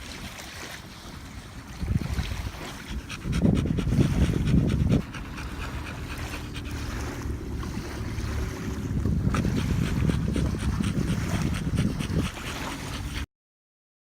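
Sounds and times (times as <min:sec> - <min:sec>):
dog panting: 0:02.5 - 0:13.3
low rumbling buffets: 0:02.8 - 0:13.2
low steady hum: 0:02.9 - 0:13.2.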